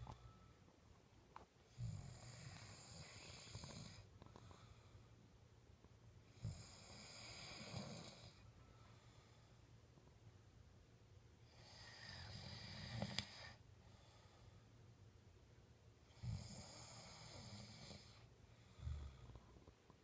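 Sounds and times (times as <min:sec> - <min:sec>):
person snoring faintly: 0:01.7 - 0:05.0, 0:06.3 - 0:08.5, 0:11.5 - 0:14.2, 0:16.1 - 0:19.6.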